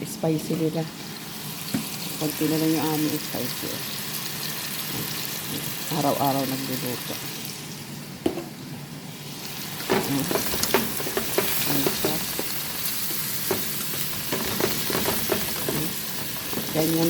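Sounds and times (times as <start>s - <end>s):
food sizzling in hot oil: 0.0s - 8.0s, 9.1s - 17.0s
utensil scraping a pan: 10.0s - 16.9s.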